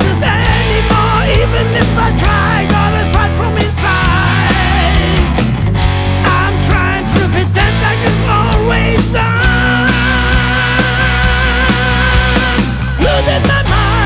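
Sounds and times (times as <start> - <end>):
lead guitar line with vibrato: 0.0 - 14.0
rock song with guitars and drums: 0.0 - 14.0.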